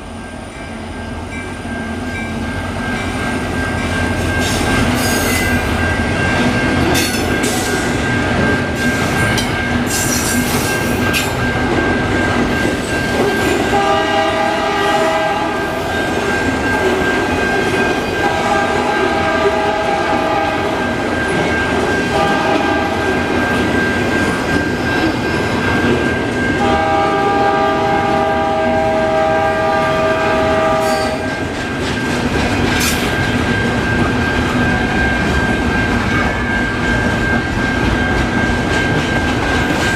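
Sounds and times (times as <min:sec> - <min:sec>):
train rumble and wheel clatter: 0:00.0 - 0:39.9
locomotive air horn: 0:13.7 - 0:15.8, 0:18.2 - 0:20.7, 0:22.1 - 0:23.1, 0:26.6 - 0:31.3.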